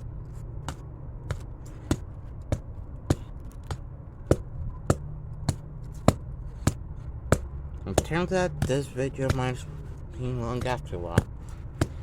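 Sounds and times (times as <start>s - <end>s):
low steady hum: 0.0s - 12.0s
sharp knocking taps: 0.6s - 9.7s.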